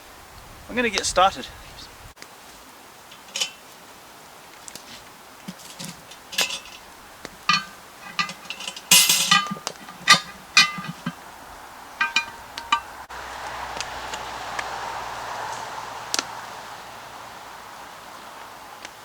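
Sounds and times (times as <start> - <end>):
steady hiss: 0.0 - 19.0
metal cooking gear clinking: 3.1 - 3.8, 5.4 - 11.2, 12.0 - 13.0.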